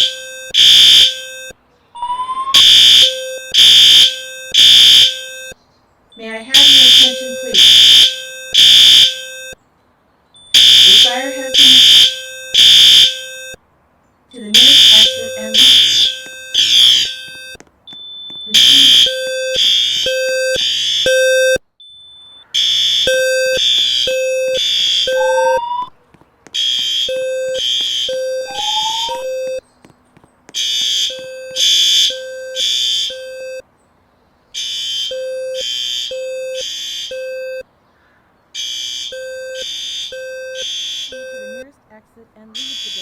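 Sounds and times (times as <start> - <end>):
fire alarm low buzzy beeps: 0.0 - 9.6, 10.4 - 13.6, 14.4 - 26.0, 26.6 - 29.6, 30.6 - 33.6, 34.6 - 37.7, 38.6 - 41.8, 42.6 - 43.0
faint rising tone chirps: 25.1 - 25.9, 28.2 - 29.6.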